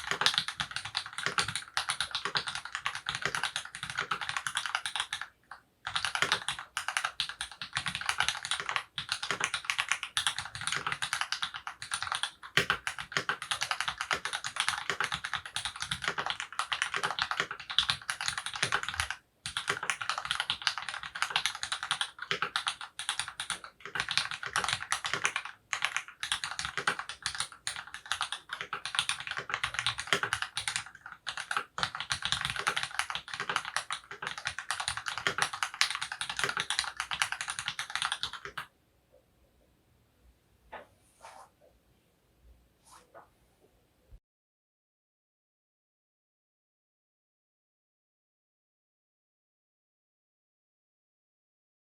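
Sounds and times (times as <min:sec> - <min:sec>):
mechanical keyboard typing: 0:00.0 - 0:38.7.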